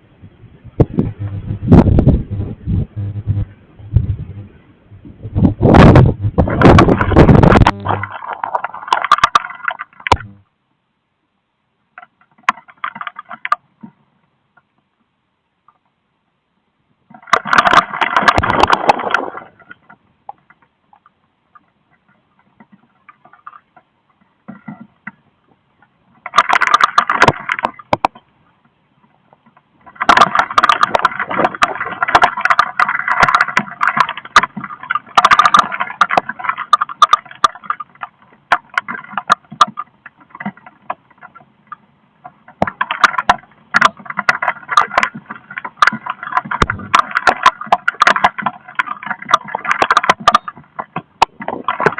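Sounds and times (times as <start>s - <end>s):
wind gusts buffeting microphone: 0.0s - 8.1s.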